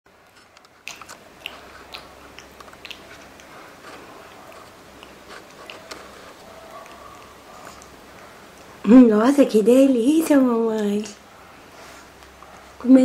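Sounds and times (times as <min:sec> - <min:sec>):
pet crunching a biscuit: 0:00.2 - 0:08.8.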